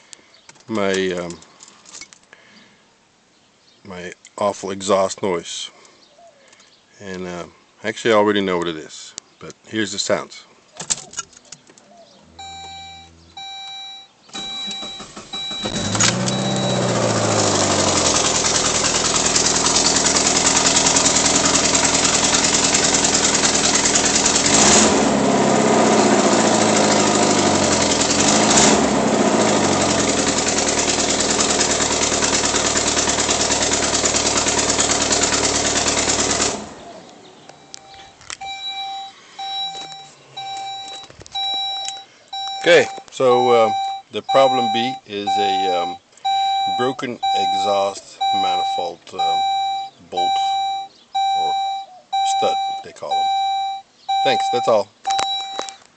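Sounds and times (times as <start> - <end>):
car engine starting and revving: 12.1 - 55.4
dashboard chime beeps: 12.2 - 17.0, 37.6 - 55.8.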